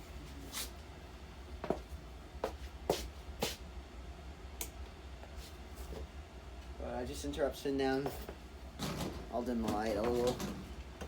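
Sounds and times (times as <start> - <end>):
ceiling fan humming: 0.0 - 11.0.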